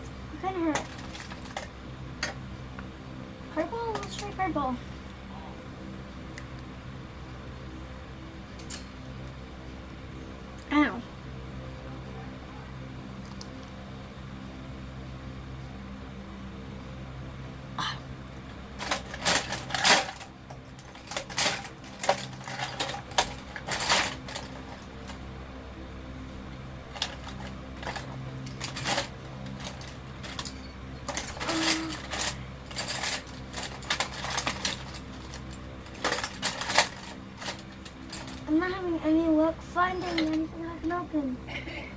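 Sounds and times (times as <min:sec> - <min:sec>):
steady low hum: 0:00.0 - 0:41.9
plastic items clinking: 0:00.7 - 0:02.4, 0:18.8 - 0:25.2, 0:26.9 - 0:38.6, 0:40.0 - 0:40.5.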